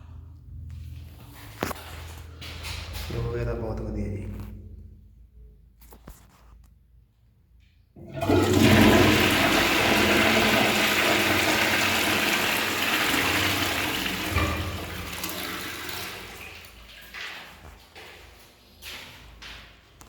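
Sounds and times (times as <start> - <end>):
toilet flushing: 8.0 - 17.6.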